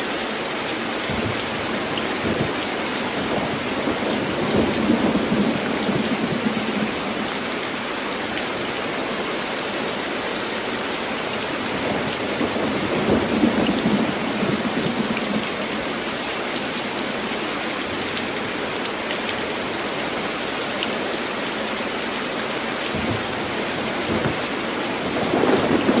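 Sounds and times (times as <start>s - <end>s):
heavy rain on a tin roof: 0.0s - 26.0s
thunder: 22.9s - 24.5s, 25.1s - 26.0s.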